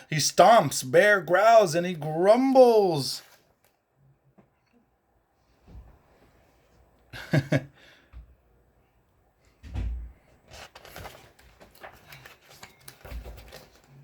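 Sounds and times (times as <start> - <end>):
paper rustling: 3.0 - 3.8, 10.2 - 14.0.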